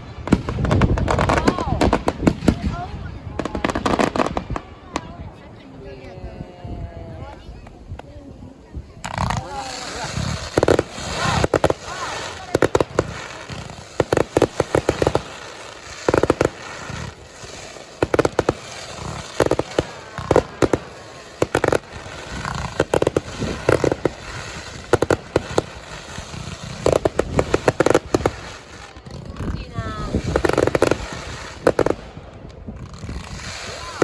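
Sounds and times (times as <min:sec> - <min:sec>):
fireworks crackling bangs: 0:00.0 - 0:06.2, 0:07.2 - 0:34.0.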